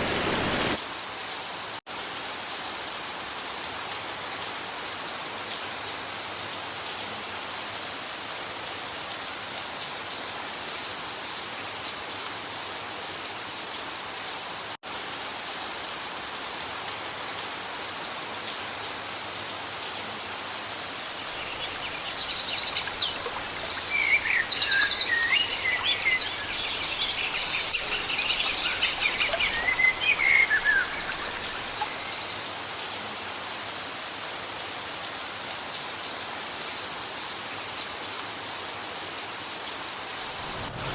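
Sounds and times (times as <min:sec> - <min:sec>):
rain falling: 0:00.0 - 0:40.9
birds chirping and trilling: 0:21.0 - 0:32.6.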